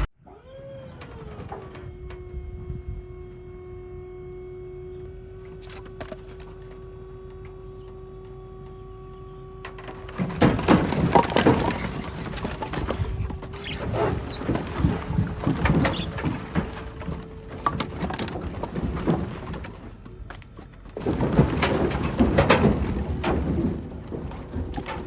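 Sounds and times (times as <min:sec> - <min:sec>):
loud knocking and crackling: 0:09.7 - 0:19.9, 0:20.9 - 0:25.0.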